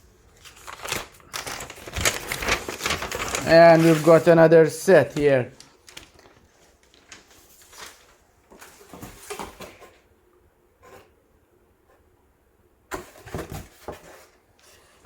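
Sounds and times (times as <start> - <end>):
packaging rustling and crinkling: 0.2 - 9.9.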